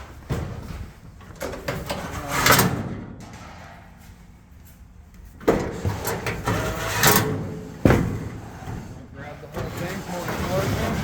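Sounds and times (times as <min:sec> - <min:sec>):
metal sliding scrape: 0:05.8 - 0:11.0.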